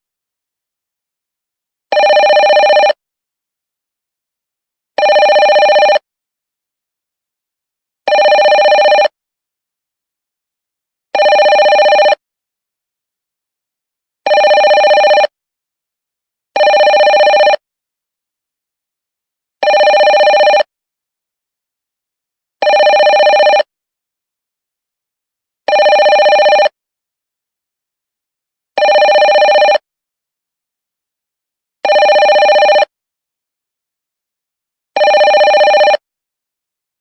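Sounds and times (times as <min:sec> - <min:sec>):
telephone ringing: 0:01.9 - 0:03.0, 0:05.0 - 0:06.0, 0:08.1 - 0:09.2, 0:11.2 - 0:12.2, 0:14.3 - 0:15.4, 0:16.6 - 0:17.6, 0:19.6 - 0:20.7, 0:22.6 - 0:23.7, 0:25.7 - 0:26.8, 0:28.8 - 0:29.9, 0:31.8 - 0:33.0, 0:35.0 - 0:36.1.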